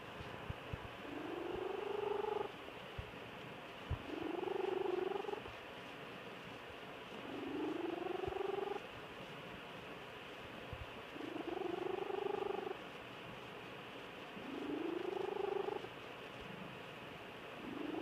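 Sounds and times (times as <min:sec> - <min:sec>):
cat snoring: 0:01.1 - 0:02.5, 0:04.0 - 0:05.4, 0:07.2 - 0:08.8, 0:11.2 - 0:12.8, 0:14.4 - 0:15.9, 0:17.6 - 0:18.0.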